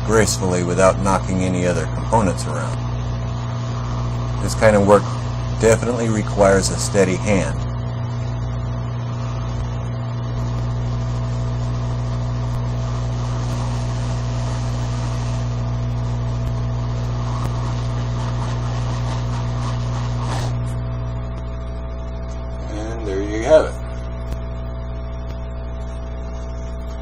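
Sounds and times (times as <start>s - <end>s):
hot air blower hissing: 0.0s - 9.8s, 10.5s - 20.8s
low hum: 0.0s - 27.0s.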